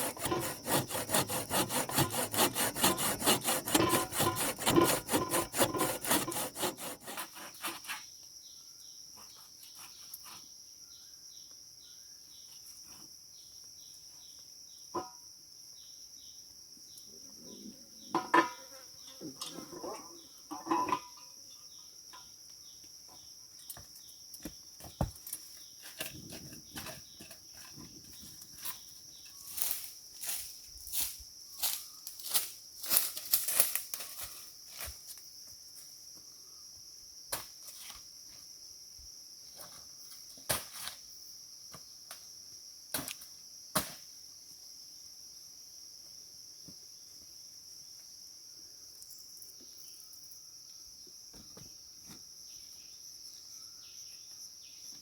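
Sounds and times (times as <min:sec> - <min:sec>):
hand saw cutting wood: 0:00.0 - 0:08.0
wood being handled: 0:00.0 - 0:08.0.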